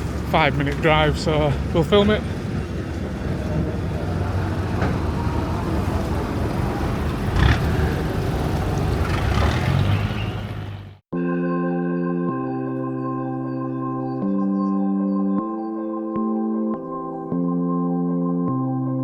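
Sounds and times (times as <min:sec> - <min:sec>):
boat engine running: 0:00.0 - 0:11.0
organ-like music: 0:10.0 - 0:19.0.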